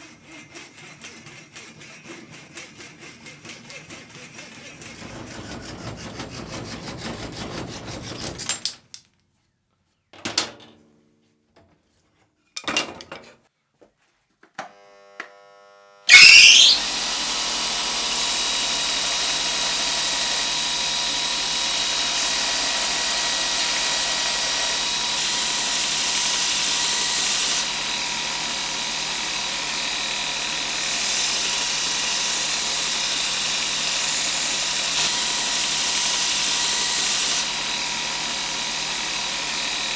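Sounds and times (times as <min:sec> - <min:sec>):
power tool whining: 0:14.7 - 0:39.9.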